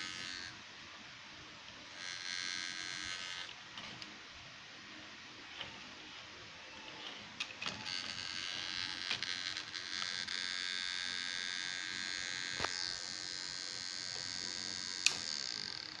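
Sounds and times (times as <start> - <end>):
hard drive high-pitched whine: 0.0 - 16.0
hard drive clicks: 12.4 - 13.0.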